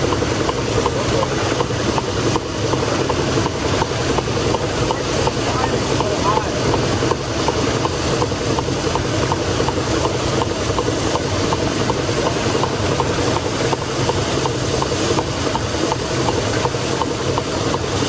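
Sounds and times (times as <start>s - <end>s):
light regular ticking: 0.0s - 17.9s
steam engine running: 0.0s - 18.0s.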